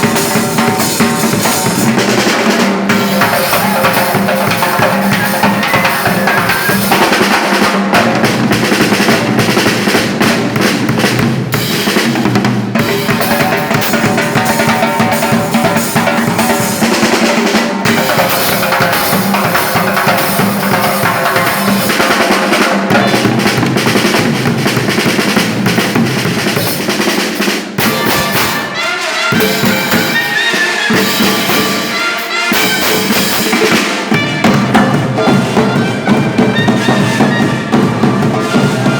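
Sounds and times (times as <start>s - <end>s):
loud music with drum beat: 0.0s - 38.9s.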